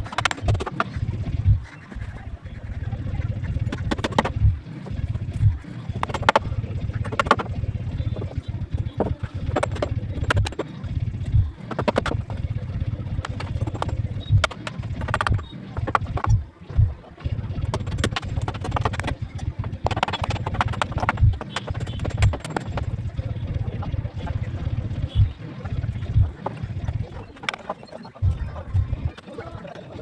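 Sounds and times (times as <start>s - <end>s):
low rumble: 0.0s - 27.4s
construction knocks and taps: 5.4s - 8.3s, 9.0s - 10.6s, 11.7s - 12.4s, 13.2s - 16.4s, 17.6s - 23.1s.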